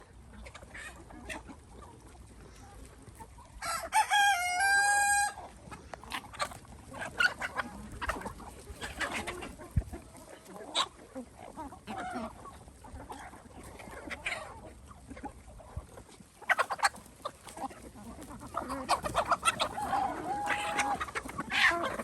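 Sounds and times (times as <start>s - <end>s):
hens clucking: 0.0s - 22.0s
rooster crowing: 3.6s - 5.4s.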